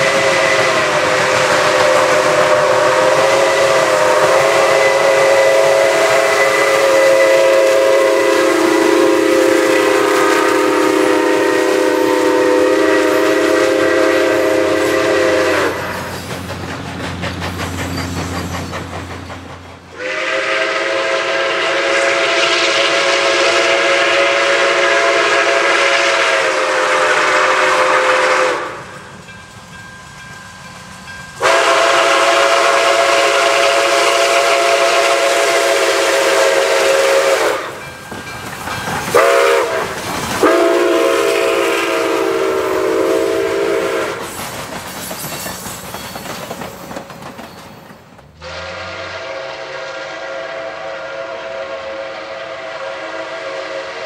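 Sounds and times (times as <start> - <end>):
steam whistle blasts: 0.0 - 16.2, 19.9 - 29.1, 31.4 - 37.9, 39.1 - 44.4, 48.4 - 54.0
train rumbling and hissing: 0.0 - 54.0.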